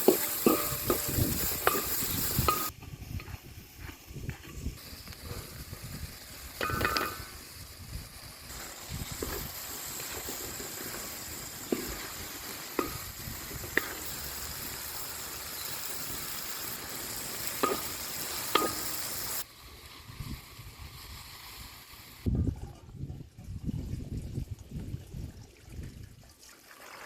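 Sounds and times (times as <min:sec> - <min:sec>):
food sizzling in a pan: 0:00.0 - 0:03.0, 0:04.6 - 0:22.3
utensil tapping a pan: 0:17.6 - 0:18.9.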